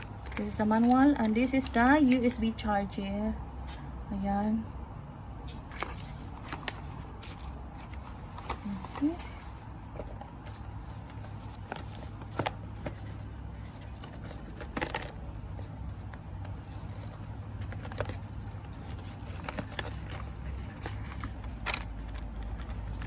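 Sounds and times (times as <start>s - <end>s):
plastic wrapping crinkling: 0.0s - 2.3s, 16.6s - 23.0s.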